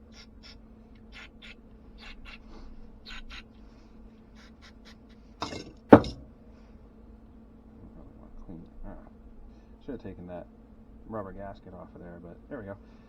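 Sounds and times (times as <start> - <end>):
sharp knocks: 5.4 - 6.3.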